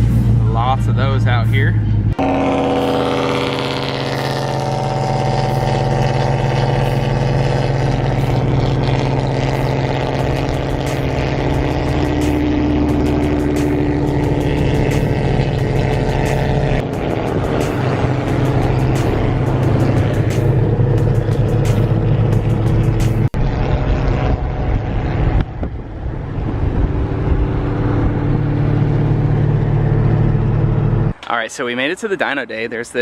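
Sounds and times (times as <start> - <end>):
car engine cruising: 0.0 - 33.0
road noise: 0.0 - 33.0.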